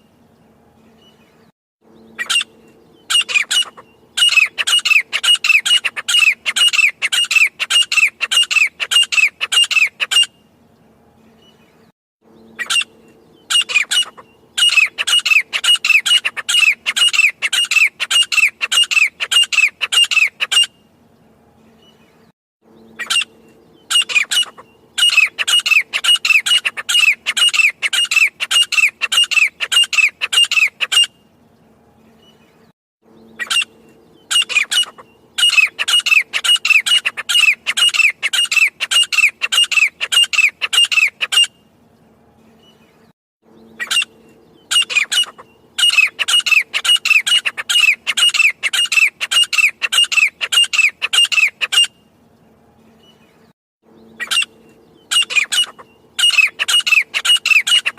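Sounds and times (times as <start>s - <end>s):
francolin calling: 1.9s - 10.3s, 12.3s - 20.8s, 22.7s - 31.2s, 33.1s - 41.6s, 43.5s - 52.1s, 53.9s - 57.9s.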